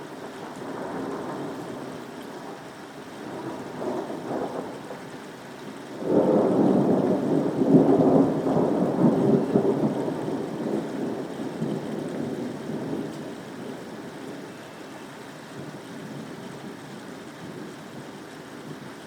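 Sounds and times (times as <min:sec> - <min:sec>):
steady rain: 0:00.0 - 0:19.0
thunder rolling: 0:06.0 - 0:13.9.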